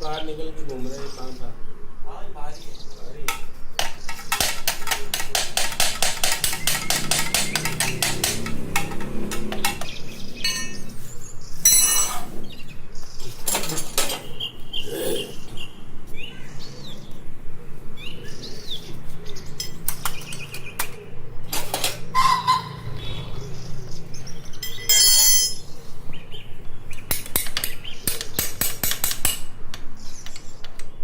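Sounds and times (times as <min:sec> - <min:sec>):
birds chirping: 0:00.0 - 0:31.0
metal tools clinking: 0:10.4 - 0:12.4, 0:13.2 - 0:14.4, 0:19.6 - 0:20.5, 0:24.6 - 0:25.7.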